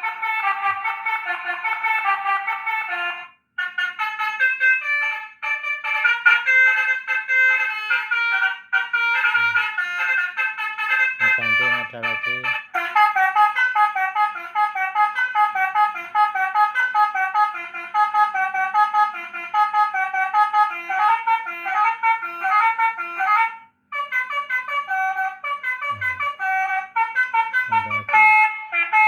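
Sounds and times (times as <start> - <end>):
electronic horn playing melody: 0.0 - 29.0.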